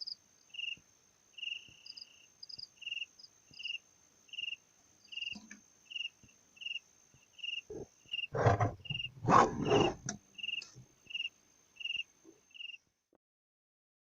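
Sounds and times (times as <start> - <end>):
cricket chirping: 0.0 - 12.9.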